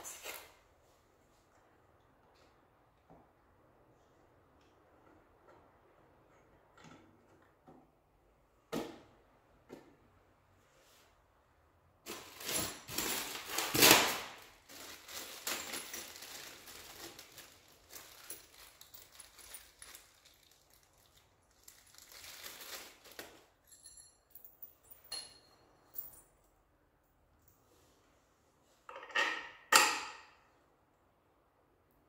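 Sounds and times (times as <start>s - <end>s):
handling rustling and scraping: 12.0s - 23.8s
small metallic clinks: 23.6s - 26.6s.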